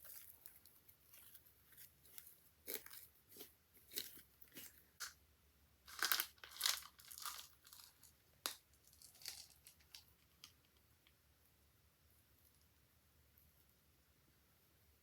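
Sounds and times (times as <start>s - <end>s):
slime crackling and tearing: 0.0s - 4.7s, 5.9s - 10.0s.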